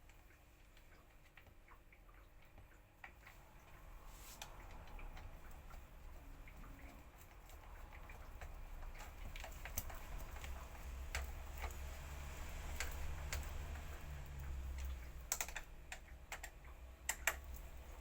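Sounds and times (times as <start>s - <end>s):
low steady hum: 0.0s - 18.0s
parts clicking and tapping: 6.5s - 18.0s.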